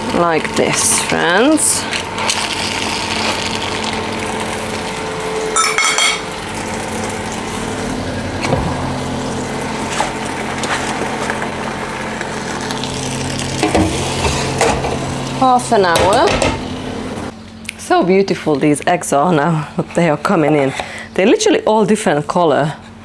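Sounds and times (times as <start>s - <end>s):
roasting tin sizzling: 0.0s - 17.4s
metallic scrape and ring: 5.6s - 6.2s
utensils clinking on metal tin: 5.6s - 6.3s.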